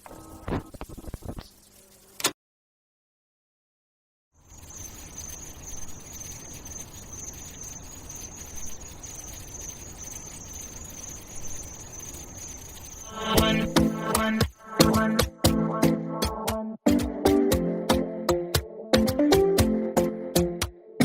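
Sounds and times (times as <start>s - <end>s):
high-pitched cricket-like trill: 4.4s - 15.4s.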